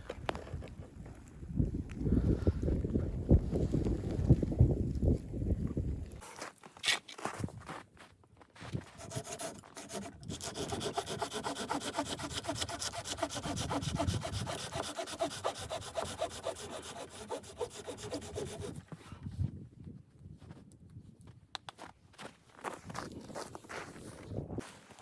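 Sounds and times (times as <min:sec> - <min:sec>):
hand saw cutting wood: 0:08.8 - 0:18.9.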